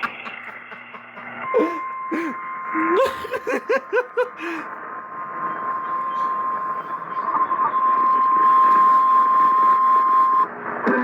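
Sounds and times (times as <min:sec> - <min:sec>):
steady high alarm tone: 0:00.1 - 0:10.4.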